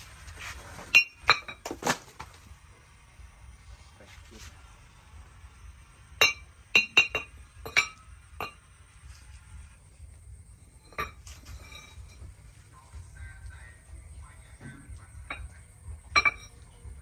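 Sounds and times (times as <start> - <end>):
metal-on-metal clinks: 6.2 - 8.7, 10.7 - 12.4, 15.3 - 16.8.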